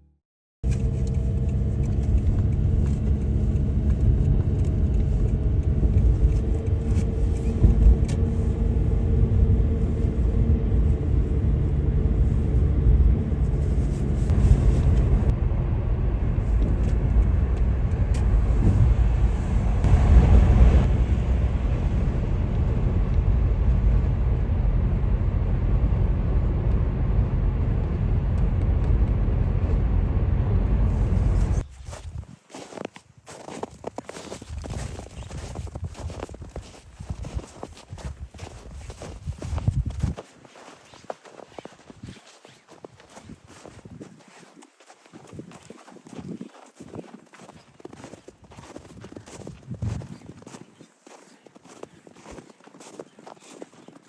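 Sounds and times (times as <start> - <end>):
car road and engine rumble: 0.6 - 32.2.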